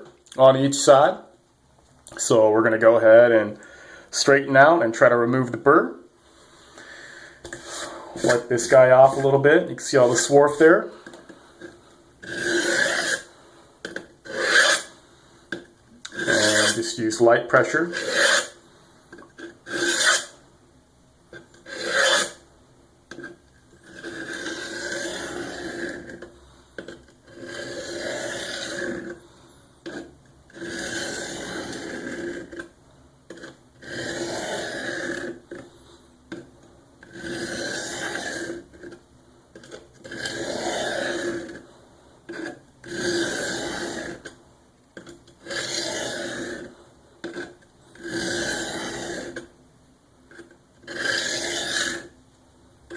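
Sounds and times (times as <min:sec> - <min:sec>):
knife blade scraping on hone: 0:11.6 - 0:14.9, 0:16.1 - 0:17.0, 0:17.6 - 0:18.6, 0:19.4 - 0:20.4, 0:21.6 - 0:22.4, 0:23.1 - 0:29.2, 0:29.8 - 0:32.7, 0:33.3 - 0:35.6, 0:37.0 - 0:39.0, 0:39.6 - 0:41.6, 0:42.3 - 0:44.3, 0:45.4 - 0:49.5, 0:50.3 - 0:52.1.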